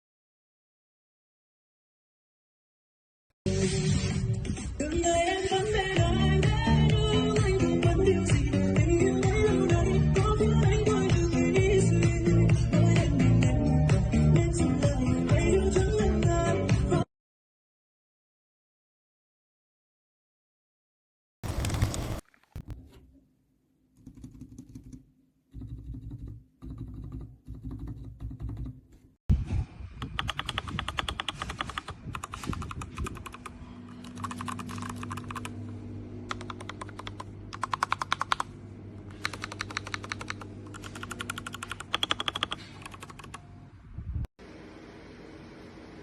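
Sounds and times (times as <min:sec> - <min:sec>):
mechanical keyboard typing: 0:21.4 - 0:22.7, 0:30.0 - 0:35.6, 0:36.3 - 0:38.5, 0:39.1 - 0:43.4.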